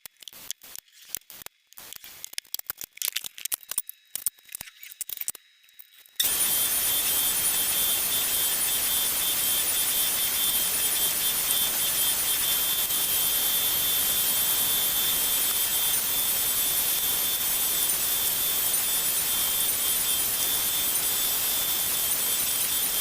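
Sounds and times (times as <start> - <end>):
workshop machine whirring: 6.2 - 23.0.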